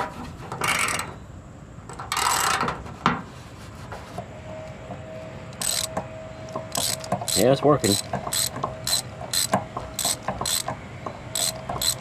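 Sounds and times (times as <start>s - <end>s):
ratchet click: 5.6s - 5.9s, 6.7s - 10.7s, 11.3s - 12.0s
ratchet strokes: 5.6s - 5.9s, 6.7s - 10.7s, 11.3s - 12.0s.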